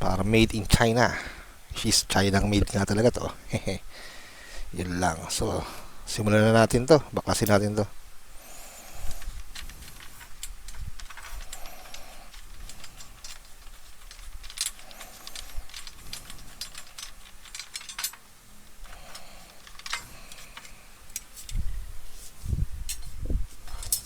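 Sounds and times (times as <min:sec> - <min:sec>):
small clicks taps and rattles: 0:09.2 - 0:18.3.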